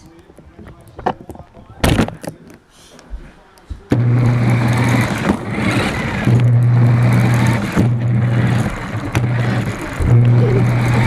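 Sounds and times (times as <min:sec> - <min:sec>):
tyres rumbling over ground: 0:04.1 - 0:11.0
toy car motor hum: 0:04.2 - 0:11.0.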